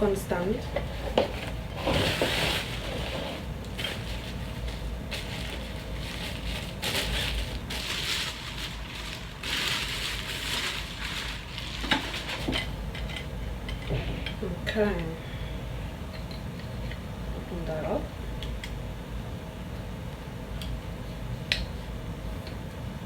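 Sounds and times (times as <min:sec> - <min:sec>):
packaging crinkling and rustling: 0:01.4 - 0:12.7.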